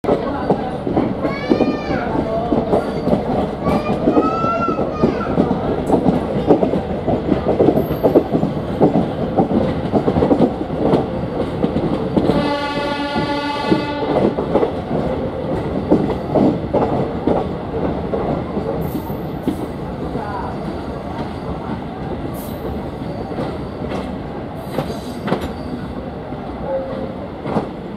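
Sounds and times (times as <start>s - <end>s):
train wheels clattering on rails: 0.0s - 27.9s
train horn: 12.3s - 14.2s.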